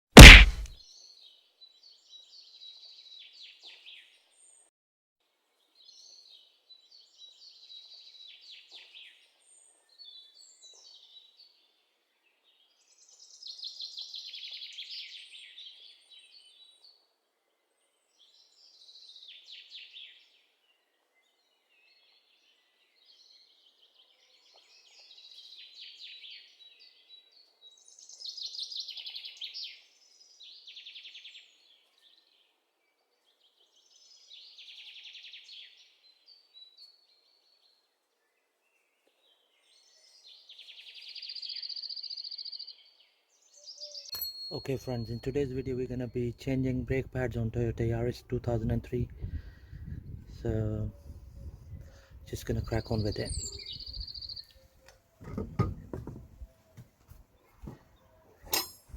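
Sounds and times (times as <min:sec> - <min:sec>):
faint outdoor background noise: 0:05.2 - 0:58.9
songbird trilling: 0:52.7 - 0:54.8.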